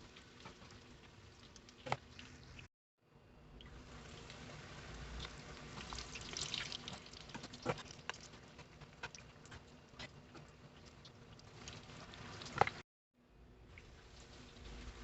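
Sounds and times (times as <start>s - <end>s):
batter sizzling in hot oil: 3.7s - 12.8s.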